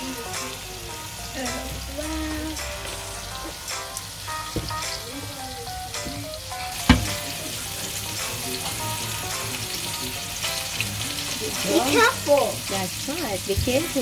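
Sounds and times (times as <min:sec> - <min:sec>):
chicken sizzling in hot oil: 0:00.0 - 0:14.0
sharp knock: 0:06.9 - 0:07.3.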